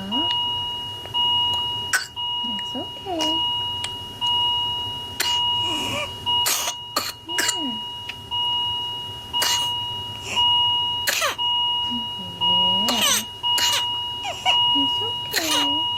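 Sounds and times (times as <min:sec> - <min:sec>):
electronic alarm chiming: 0:00.0 - 0:15.9
infant coughing and gasping: 0:01.9 - 0:02.2, 0:05.2 - 0:07.8, 0:09.4 - 0:10.4, 0:11.0 - 0:11.4, 0:12.9 - 0:15.9
infant crying: 0:12.9 - 0:14.6, 0:15.3 - 0:15.8.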